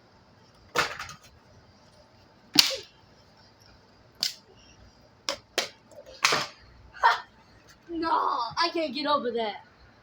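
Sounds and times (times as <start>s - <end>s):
fan parts cracking when struck: 2.6s - 2.9s.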